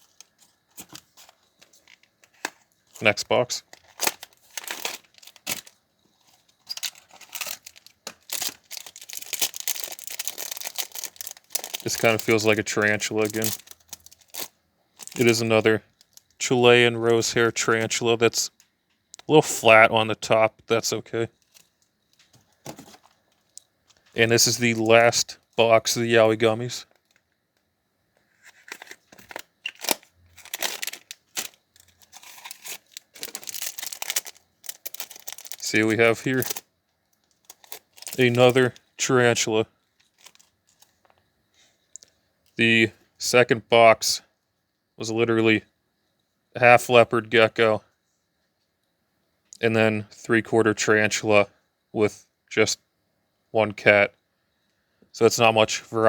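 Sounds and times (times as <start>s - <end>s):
packaging torn and crinkled: 0.0s - 5.8s, 6.6s - 15.4s, 28.5s - 36.6s, 37.3s - 38.8s, 40.0s - 40.9s.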